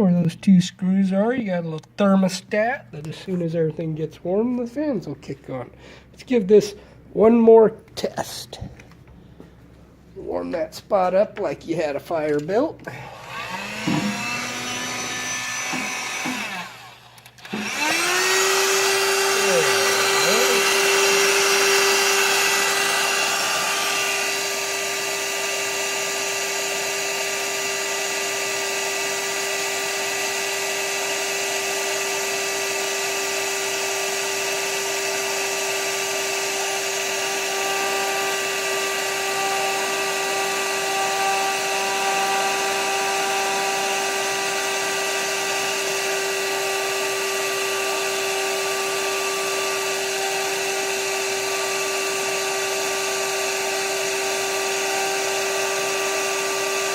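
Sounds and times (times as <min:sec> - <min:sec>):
hot-air blower whining: 0:12.8 - 0:56.9.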